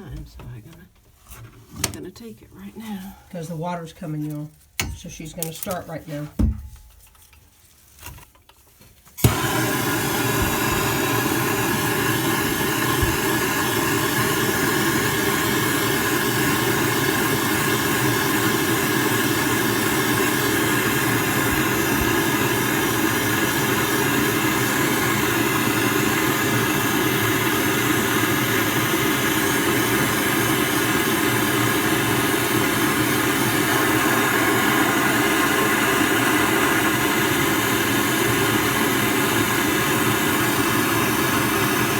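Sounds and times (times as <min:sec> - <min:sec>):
gas torch hissing: 0:09.2 - 0:41.9.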